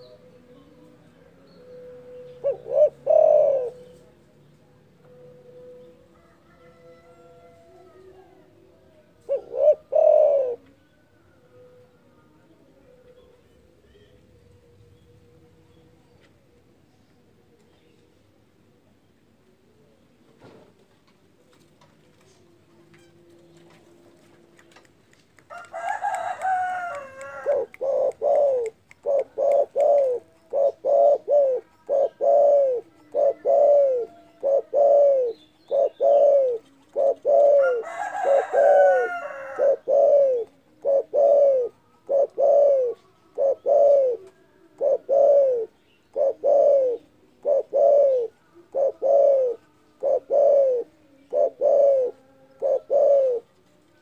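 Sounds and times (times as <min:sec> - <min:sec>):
dove cooing: 0:01.5 - 0:04.2, 0:09.1 - 0:12.0, 0:25.5 - 0:53.6.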